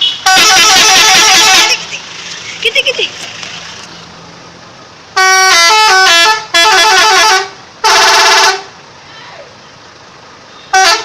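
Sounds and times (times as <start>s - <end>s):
multi-tone musical bus horn: 0.0s - 1.9s, 5.1s - 8.8s, 10.4s - 11.0s.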